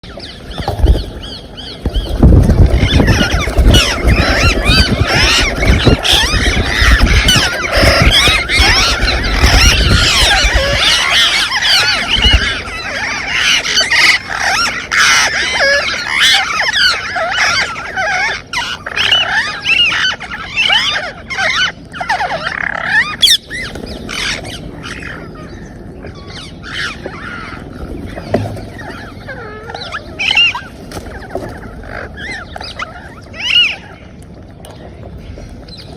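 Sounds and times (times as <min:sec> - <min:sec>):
low rumbling: 0:00.0 - 0:15.2
parrots screeching and chattering: 0:00.1 - 0:34.1.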